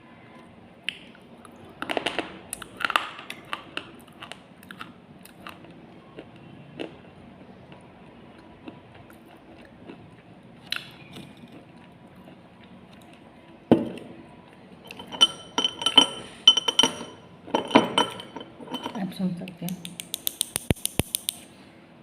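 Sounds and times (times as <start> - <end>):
hard ringing clinks: 14.9 - 19.0.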